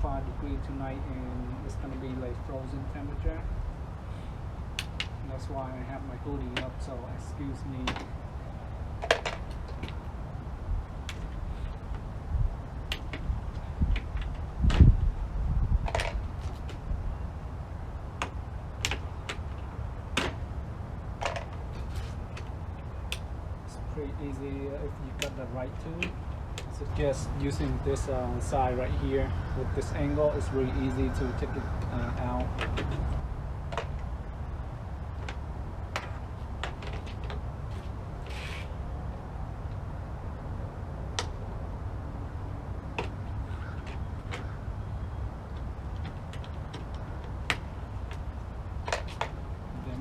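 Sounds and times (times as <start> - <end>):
steady low rumble: 0.0 - 50.0
short rustle: 21.7 - 22.5, 36.9 - 38.8.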